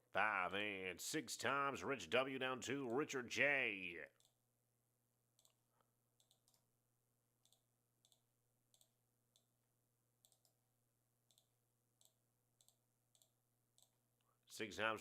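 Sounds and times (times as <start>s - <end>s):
computer mouse clicks: 6.2s - 6.6s, 7.4s - 9.5s, 10.2s - 10.6s, 11.3s - 13.9s.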